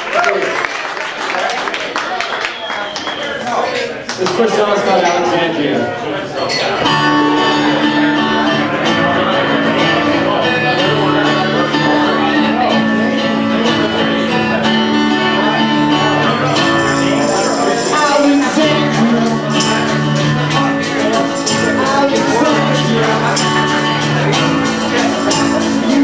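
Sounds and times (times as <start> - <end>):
acoustic guitar chords: 6.7 - 26.0
percussion hits: 16.5 - 26.0.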